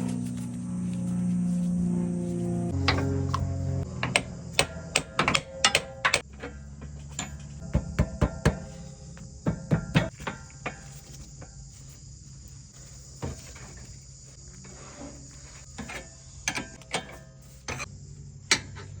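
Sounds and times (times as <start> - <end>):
hand tools clicking on metal: 4.0 - 8.7.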